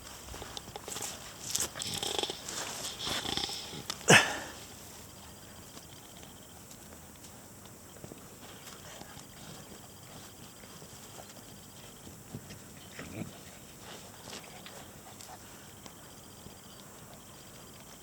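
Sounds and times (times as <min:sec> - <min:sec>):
puppies scuffling: 0:05.6 - 0:18.0.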